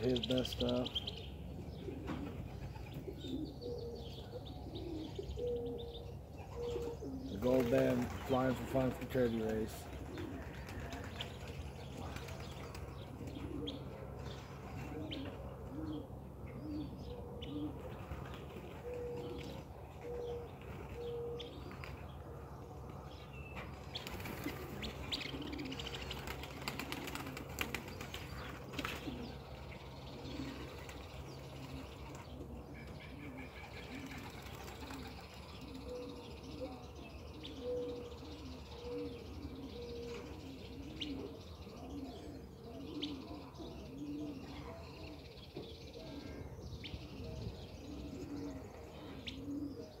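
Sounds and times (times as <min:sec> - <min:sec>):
pigeons cooing: 0:00.0 - 0:50.0
wings flapping and clapping: 0:07.4 - 0:12.9, 0:24.0 - 0:24.8, 0:25.9 - 0:29.1, 0:33.9 - 0:35.3.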